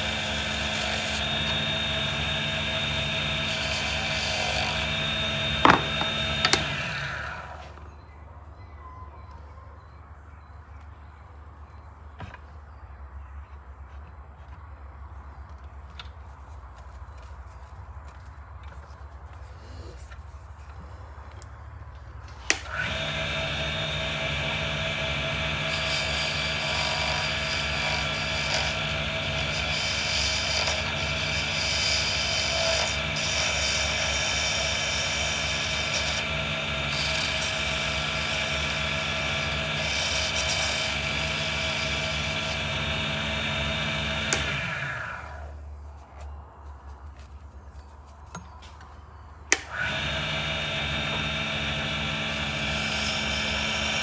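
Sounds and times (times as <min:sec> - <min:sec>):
lathe running: 0:00.0 - 0:07.8, 0:22.6 - 0:45.5, 0:49.5 - 0:54.0
rough hiss of blank being worked: 0:00.0 - 0:07.8
lathe switch click: 0:05.5 - 0:07.1.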